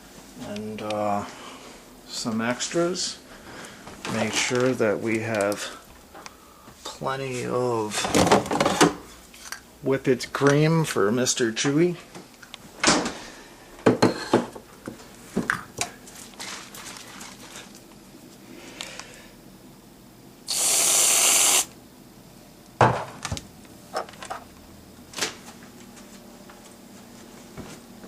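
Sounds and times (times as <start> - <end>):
whipped cream can spraying: 20.5 - 21.7.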